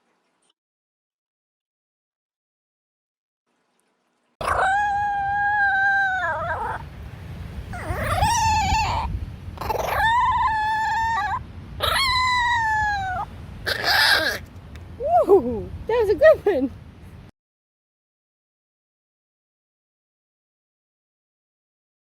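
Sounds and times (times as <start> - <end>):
dog howling: 4.4 - 6.8, 7.7 - 14.4.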